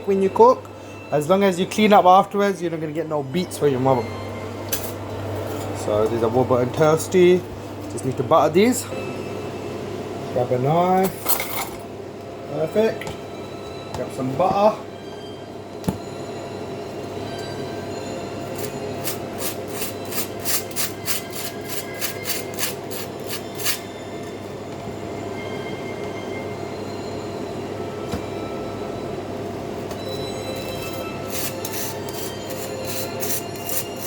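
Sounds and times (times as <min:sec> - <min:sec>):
knife scraping butter on toast: 0:30.8 - 0:34.0.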